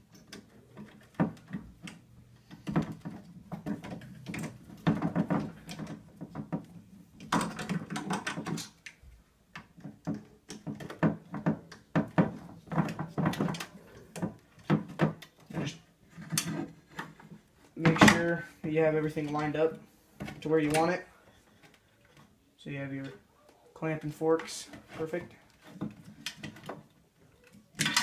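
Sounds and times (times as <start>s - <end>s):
metal parts clicking and knocking: 0.0s - 18.4s, 25.6s - 28.0s.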